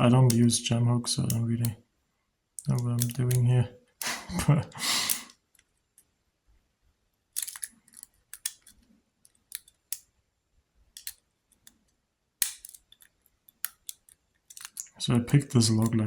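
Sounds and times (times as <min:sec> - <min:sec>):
lock pick scraping and clicking: 0:07.4 - 0:10.1, 0:11.0 - 0:11.8, 0:12.4 - 0:14.9.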